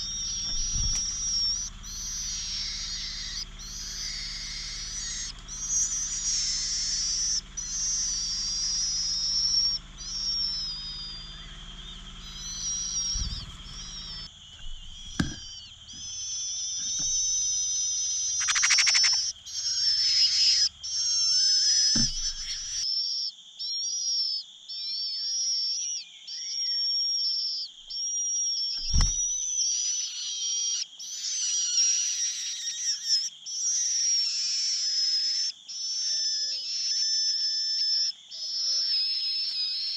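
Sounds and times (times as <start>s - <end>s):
bird chick begging calls: 0.0s - 39.9s
dull thumps: 0.4s - 1.4s, 13.0s - 16.1s, 21.9s - 22.8s, 28.8s - 29.4s.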